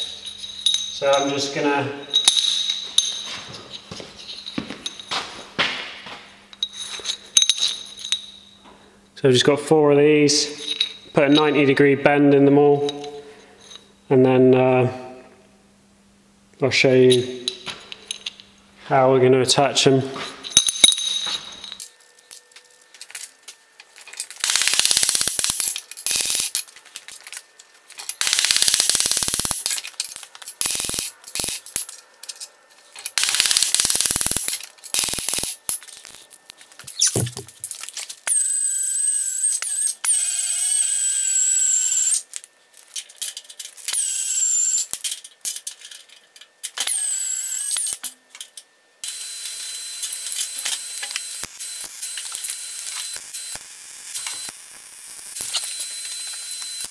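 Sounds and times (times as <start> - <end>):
power tool motor whining: 46.8 - 48.0, 49.0 - 54.6, 55.3 - 56.9.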